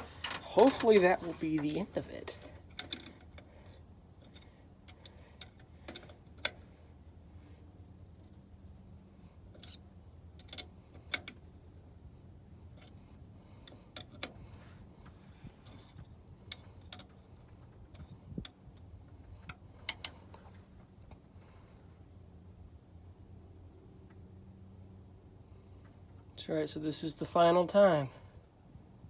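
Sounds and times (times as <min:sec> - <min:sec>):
clicks of plastic fittings: 0:00.0 - 0:01.8
low steady hum: 0:00.0 - 0:29.0.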